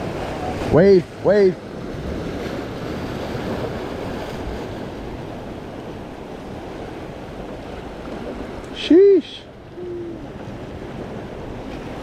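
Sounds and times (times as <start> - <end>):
waves washing over rocks: 0.0 - 12.0
wind on microphone: 9.5 - 12.0.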